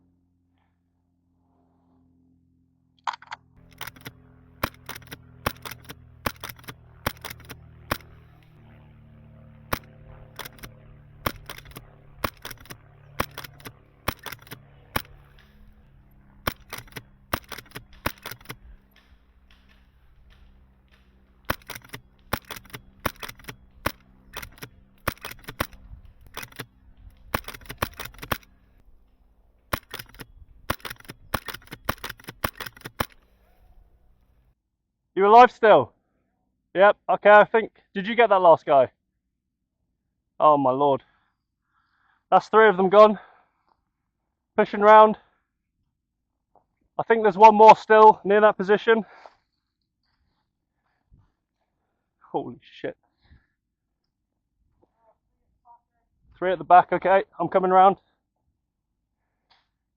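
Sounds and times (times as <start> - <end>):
airsoft gun shots cracking: 3.6 - 8.3, 9.7 - 15.8, 16.4 - 28.5.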